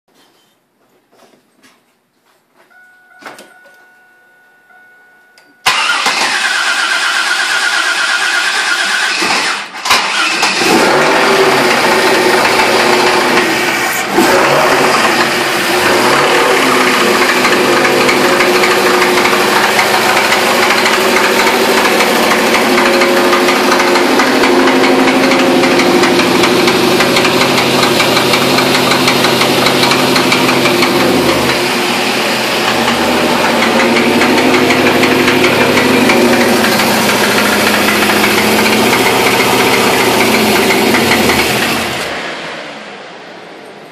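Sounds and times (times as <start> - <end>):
car engine cranking and starting: 5.6 - 42.6
engine idling: 14.7 - 42.2
engine knock: 15.8 - 31.7, 32.6 - 41.8.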